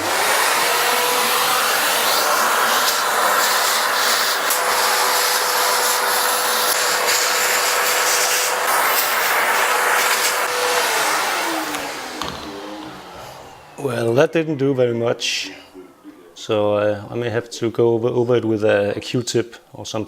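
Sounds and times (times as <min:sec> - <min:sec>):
vacuum cleaner running: 0:00.0 - 0:14.9.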